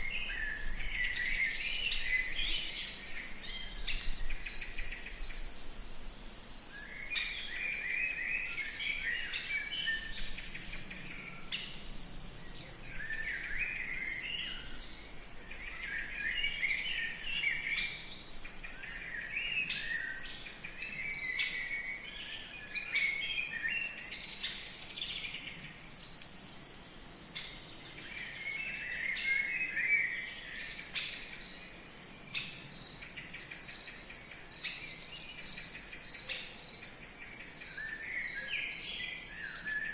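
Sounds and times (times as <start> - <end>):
insect chirping: 0.0 - 39.9.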